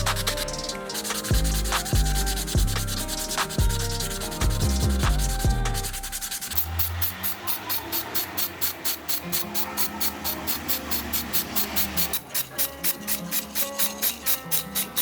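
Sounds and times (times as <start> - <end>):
background music with a beat: 0.0 - 7.4
hand sanding strokes: 0.0 - 15.0.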